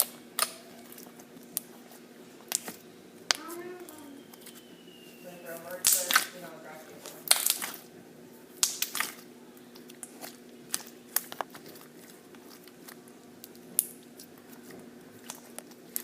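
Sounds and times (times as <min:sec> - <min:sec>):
slime squished with clicking pops: 0:00.0 - 0:01.7, 0:02.4 - 0:03.6, 0:05.8 - 0:06.4, 0:07.2 - 0:07.8, 0:08.6 - 0:11.7, 0:12.4 - 0:16.0
faint steady hum: 0:00.0 - 0:16.0.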